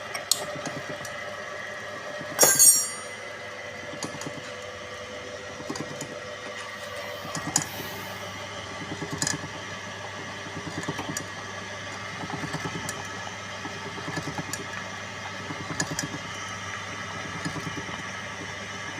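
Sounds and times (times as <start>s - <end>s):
pellet mill humming and pulsing: 0.0s - 18.9s.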